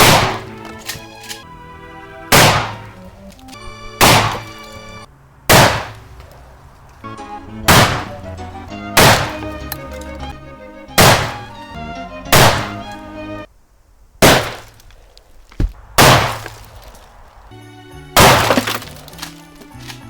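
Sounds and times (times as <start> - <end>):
loud shotgun shots: 0.0 - 1.1, 2.3 - 3.0, 3.9 - 4.8, 5.5 - 6.1, 7.6 - 8.3, 8.9 - 9.7, 11.0 - 11.6, 12.3 - 13.0, 14.2 - 14.8, 16.0 - 16.8, 18.2 - 18.8
things breaking: 0.0 - 1.5, 14.3 - 17.5, 18.2 - 20.0
background music: 0.0 - 5.1, 7.0 - 13.5, 17.5 - 20.0.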